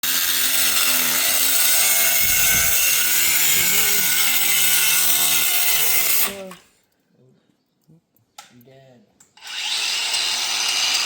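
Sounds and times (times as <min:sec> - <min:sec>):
power tool running under load: 0:00.0 - 0:06.5, 0:09.4 - 0:11.0.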